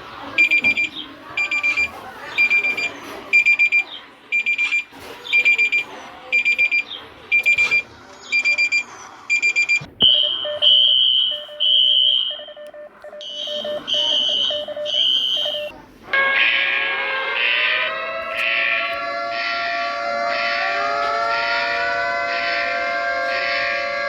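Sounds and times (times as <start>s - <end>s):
high alarm tone: 0.3s - 24.0s
rapid high alarm beeps: 0.4s - 15.7s.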